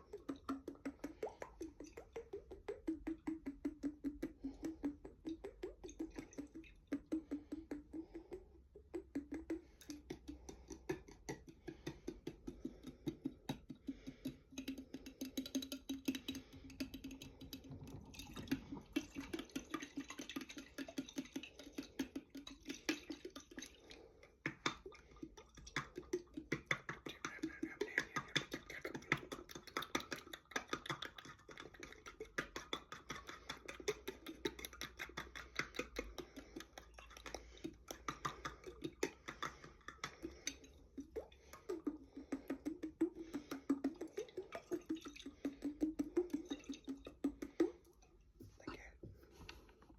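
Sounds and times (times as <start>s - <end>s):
tapping on a jar of water: 0.0s - 49.2s.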